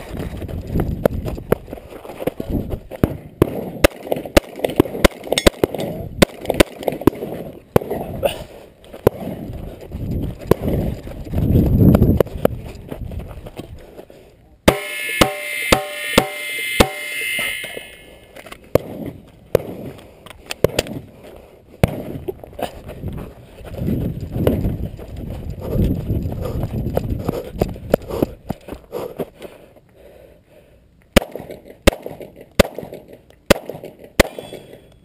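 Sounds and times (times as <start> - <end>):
metallic ring: 14.7 - 18.2
pistol shots: 31.2 - 34.8.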